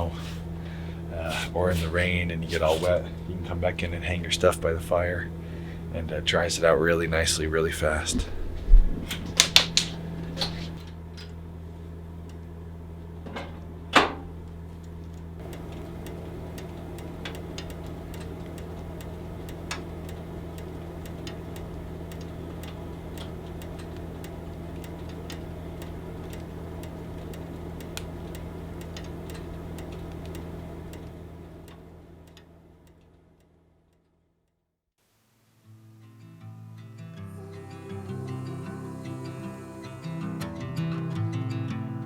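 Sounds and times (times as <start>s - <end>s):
steady low hum: 0.0s - 34.1s, 37.2s - 42.0s
wood fire crackling and popping: 8.0s - 10.8s, 15.2s - 31.8s.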